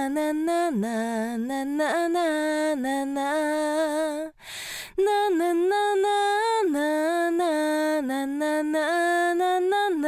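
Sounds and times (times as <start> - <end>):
woman singing with vibrato: 0.0 - 10.0
sharp breath: 4.4 - 5.0.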